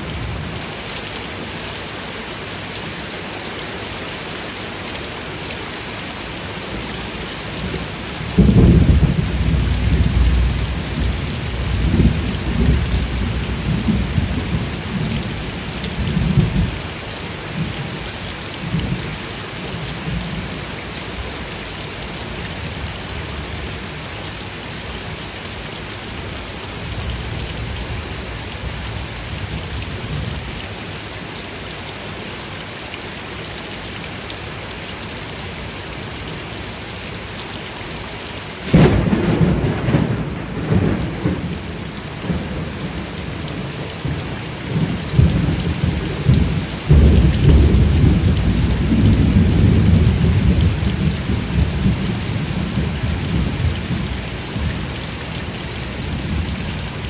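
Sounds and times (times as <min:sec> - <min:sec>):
heavy rain: 0:00.0 - 0:57.0
thunder rumbling: 0:07.7 - 0:15.3, 0:38.7 - 0:54.8
loud thunderclap: 0:08.4 - 0:14.6, 0:38.7 - 0:52.2.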